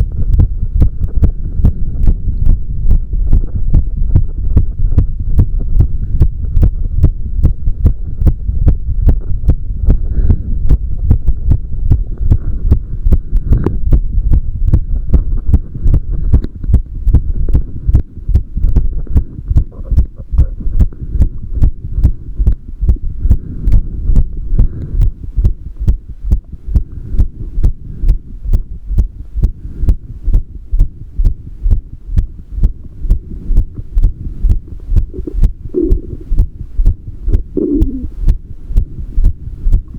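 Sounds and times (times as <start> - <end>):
heartbeat: 0.0 - 39.9
low hum: 0.0 - 39.9.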